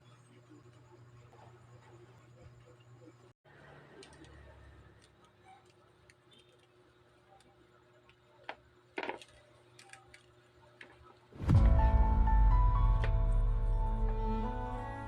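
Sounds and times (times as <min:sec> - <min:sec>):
background music: 0:11.4 - 0:15.0.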